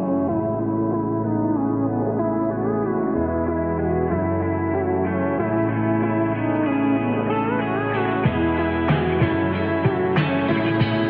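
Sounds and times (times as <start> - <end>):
instrumental background music: 0.0 - 11.0.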